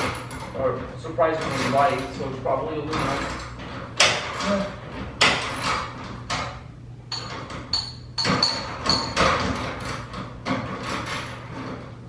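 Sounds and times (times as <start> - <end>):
metal knocks and clinks: 5.2 - 11.7.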